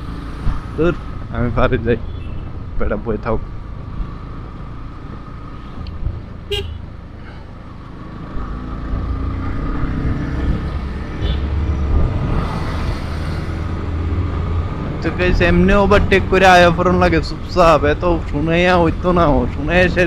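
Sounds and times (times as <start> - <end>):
motorcycle engine and wind rumble: 0.0 - 12.9
vehicle horn: 2.0 - 2.5, 6.5 - 6.8, 11.2 - 11.5.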